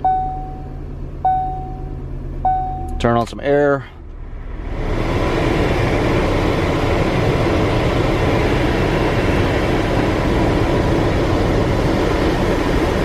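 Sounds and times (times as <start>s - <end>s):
car engine idling: 0.0s - 13.0s
blower fan air rushing: 3.8s - 13.0s.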